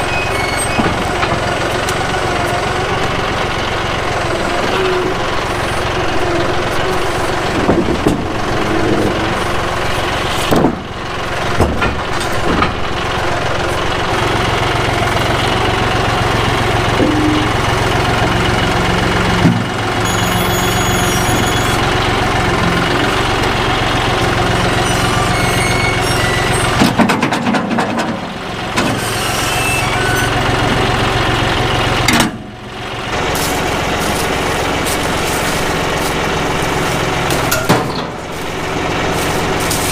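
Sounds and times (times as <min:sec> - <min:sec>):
tractor diesel engine running: 0:00.0 - 0:39.9
knocks and rattles: 0:07.4 - 0:08.6, 0:10.4 - 0:13.2, 0:26.8 - 0:29.0.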